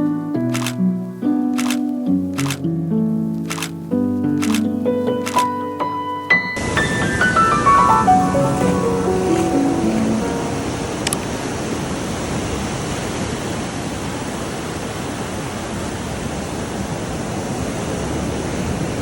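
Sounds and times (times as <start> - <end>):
short click: 0.5 - 0.8, 1.6 - 2.6
ocean surf rushing: 6.6 - 19.0.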